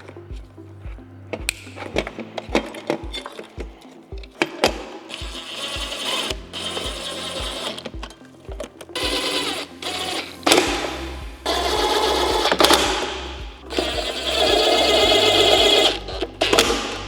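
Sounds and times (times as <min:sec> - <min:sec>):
background music with steady beat: 0:00.0 - 0:17.0
power screwdriver whirring: 0:05.1 - 0:08.2, 0:08.9 - 0:17.0.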